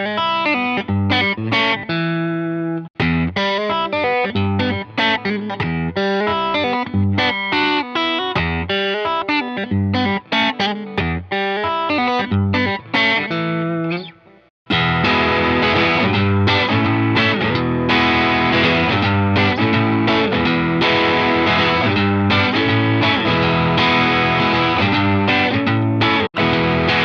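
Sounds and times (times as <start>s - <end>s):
overdriven electric guitar riff: 0.0s - 27.0s
low bass notes: 14.7s - 27.0s.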